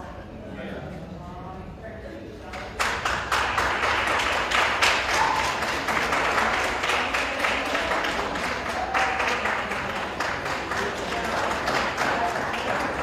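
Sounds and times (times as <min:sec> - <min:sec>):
audience applauding: 0:02.6 - 0:13.0.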